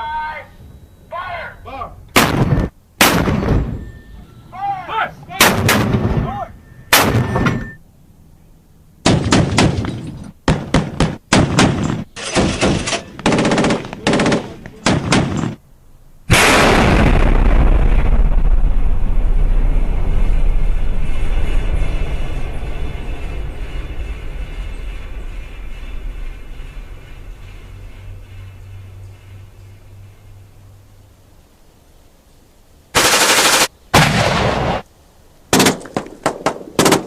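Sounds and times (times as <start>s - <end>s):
deep steady noise: 0.0s - 35.5s
loud blast: 2.1s - 4.0s, 5.4s - 7.8s, 16.3s - 27.7s, 33.0s - 34.8s
automatic gunfire bursts: 10.5s - 15.4s, 33.0s - 33.7s.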